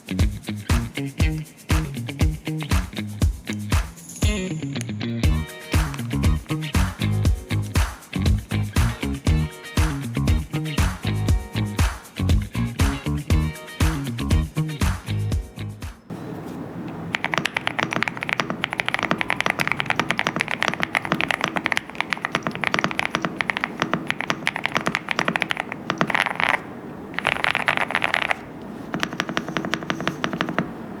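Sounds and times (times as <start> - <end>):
mechanical keyboard typing: 17.1 - 30.8.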